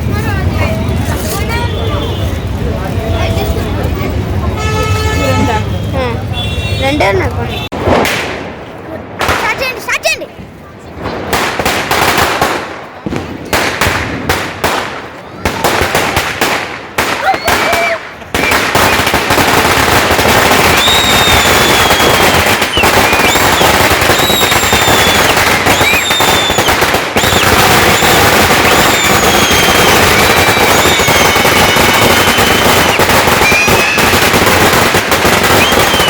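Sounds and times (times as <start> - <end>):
firecrackers cracking and banging: 0.0 - 4.5, 7.3 - 36.0
rapid-fire firecracker crackle: 0.0 - 6.3, 7.5 - 36.0
high whistles: 20.6 - 34.3, 35.4 - 36.0.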